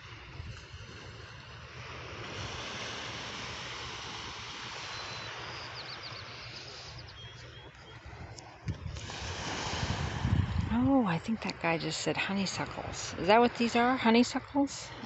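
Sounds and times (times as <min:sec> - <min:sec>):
wind rumble on microphone: 0:00.0 - 0:04.2, 0:07.9 - 0:11.2.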